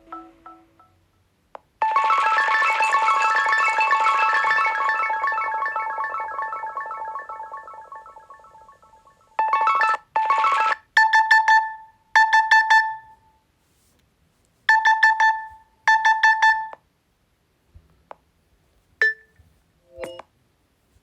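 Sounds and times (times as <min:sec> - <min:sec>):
electronic alarm beeping: 0:14.7 - 0:16.8.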